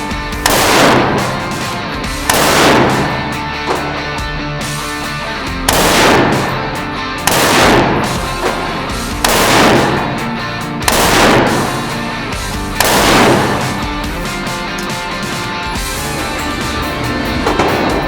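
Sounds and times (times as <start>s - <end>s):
rock music: 0.0s - 18.0s
loud crashing hits: 5.7s - 18.0s.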